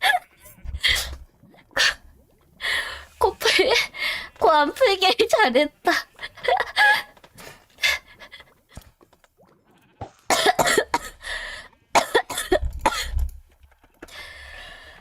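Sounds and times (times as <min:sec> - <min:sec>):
woman coughing wetly: 0:10.3 - 0:11.2, 0:12.0 - 0:13.2.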